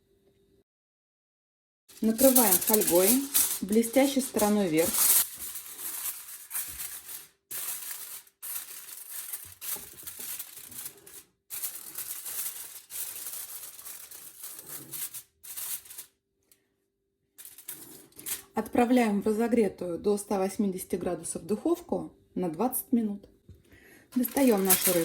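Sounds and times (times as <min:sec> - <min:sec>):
aluminium foil crinkling and tearing: 0:01.9 - 0:16.2, 0:17.4 - 0:18.6, 0:24.1 - 0:25.0.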